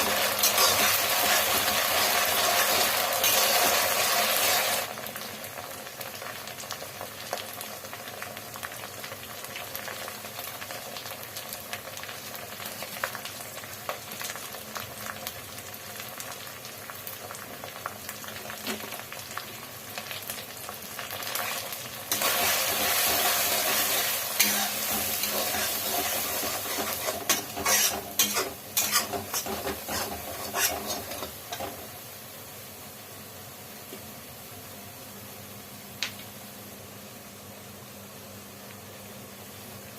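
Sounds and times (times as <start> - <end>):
spatula scraping a pan: 0.0 - 4.5, 22.1 - 31.8
food sizzling in a pan: 0.0 - 39.9.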